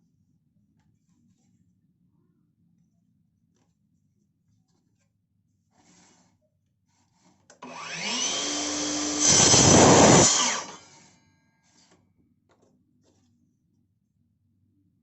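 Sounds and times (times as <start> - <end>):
small power tool whining: 7.6 - 11.2.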